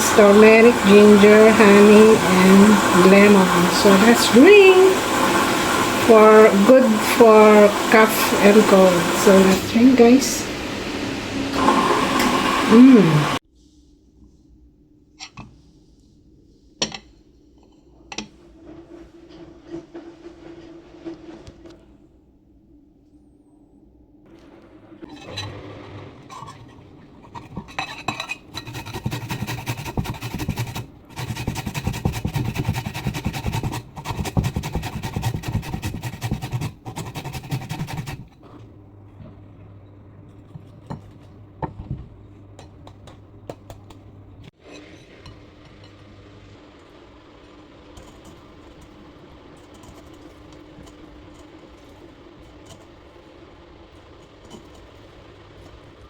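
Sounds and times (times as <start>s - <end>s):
low steady hum: 21.6s - 56.0s.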